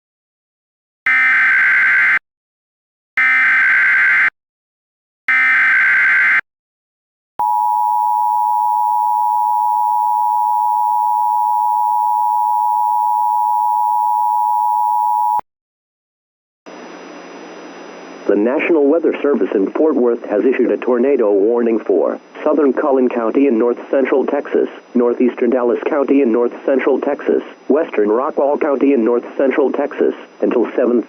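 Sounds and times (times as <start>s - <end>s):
two-tone attention signal: 7.4s - 15.4s.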